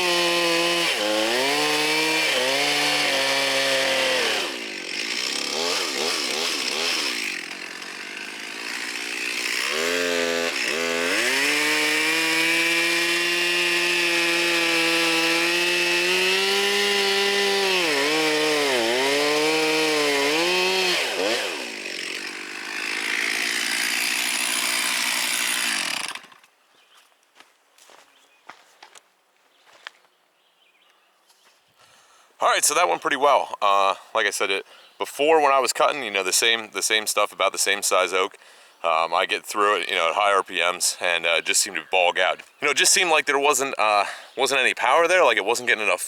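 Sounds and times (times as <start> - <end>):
chainsaw cutting wood: 0.0 - 26.6.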